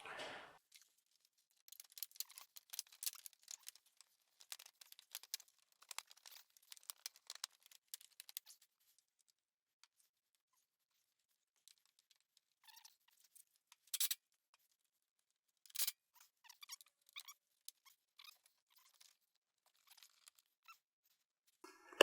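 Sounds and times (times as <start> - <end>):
hands rustling small parts: 0.2 - 9.0.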